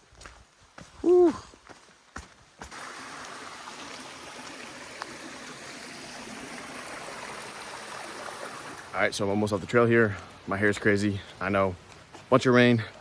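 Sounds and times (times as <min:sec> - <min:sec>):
creek water rushing: 0:02.6 - 0:13.0.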